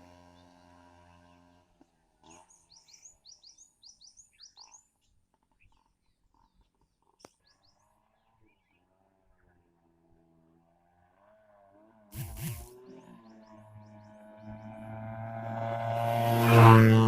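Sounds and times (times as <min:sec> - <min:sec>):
faint bird chirps: 0:02.3 - 0:09.6.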